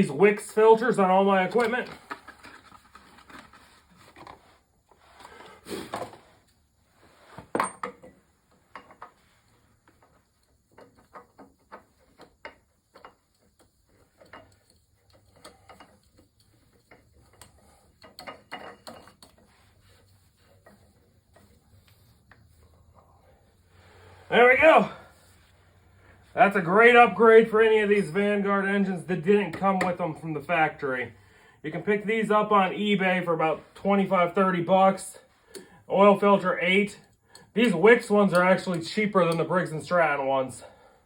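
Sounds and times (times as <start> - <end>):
tools and metal parts handled: 0.4 - 4.4, 7.3 - 23.0.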